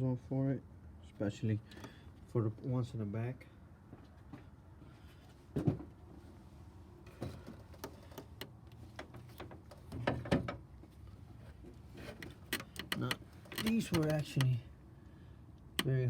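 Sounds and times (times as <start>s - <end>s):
hand tools clicking and knocking: 12.2s - 14.5s.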